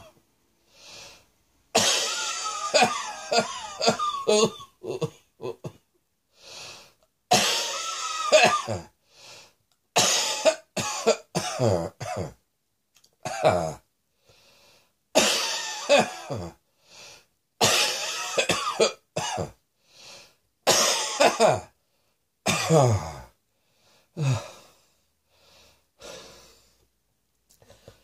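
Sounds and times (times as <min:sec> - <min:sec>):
person coughing: 0:00.0 - 0:00.2, 0:01.8 - 0:05.8, 0:07.3 - 0:08.9, 0:10.0 - 0:12.4, 0:13.3 - 0:13.8, 0:15.2 - 0:16.6, 0:17.6 - 0:19.6, 0:20.7 - 0:21.7, 0:22.5 - 0:23.3.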